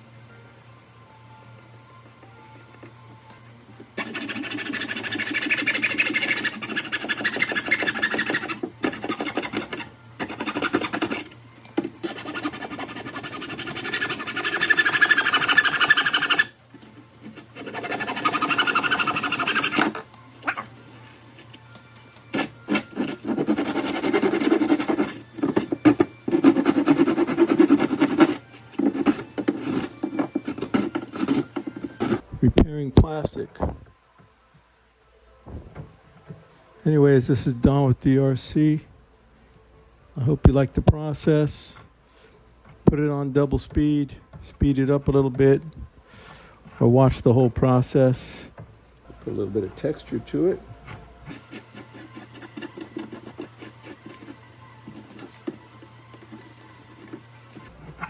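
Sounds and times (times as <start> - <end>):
plastic welding iron scraping plastic: 4.0 - 21.6, 22.2 - 32.2, 51.3 - 58.0.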